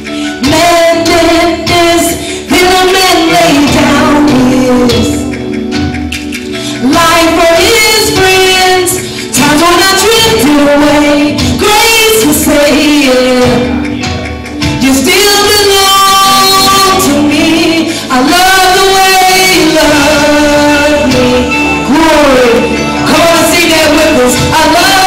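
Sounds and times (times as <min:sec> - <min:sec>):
woman singing gospel song: 0:00.0 - 0:05.4, 0:06.7 - 0:13.8, 0:14.8 - 0:25.0
musical accompaniment: 0:00.0 - 0:25.0
singer breathing: 0:02.2 - 0:02.5, 0:06.4 - 0:06.8.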